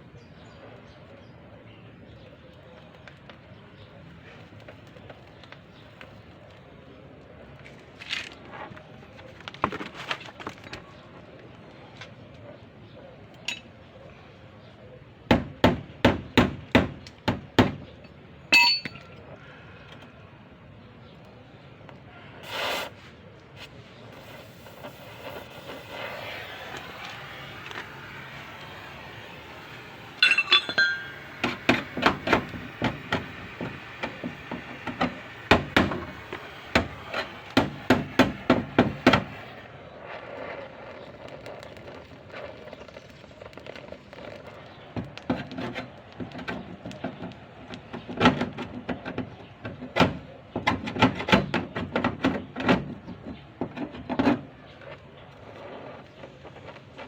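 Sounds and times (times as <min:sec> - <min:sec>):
short metallic clink: 0:18.5 - 0:19.2, 0:30.2 - 0:31.3.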